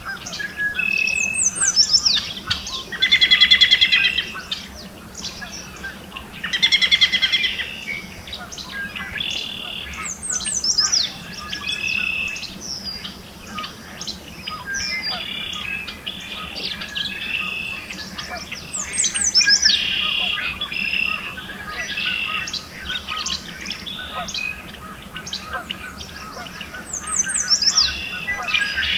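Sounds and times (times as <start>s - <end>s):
songbirds singing: 0.0s - 28.9s
warbler singing: 0.0s - 28.9s.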